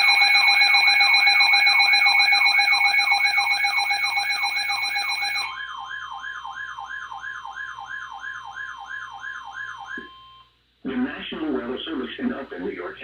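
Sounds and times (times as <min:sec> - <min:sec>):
steady alert tones: 0:00.0 - 0:06.7
siren sweeping up and down: 0:00.0 - 0:10.4.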